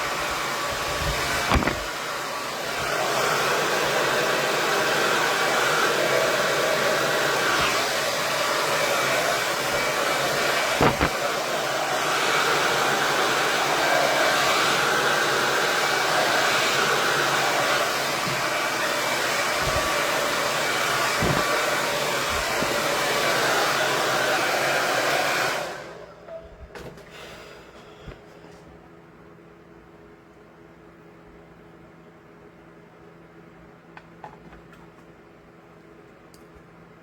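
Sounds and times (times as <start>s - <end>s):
hair dryer running: 0.0s - 26.2s.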